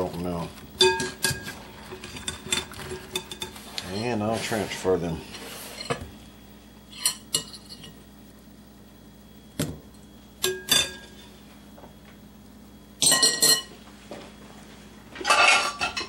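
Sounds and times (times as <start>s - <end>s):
utensil scraping plate: 1.0s - 6.0s
utensil clinking on plate: 15.2s - 16.0s.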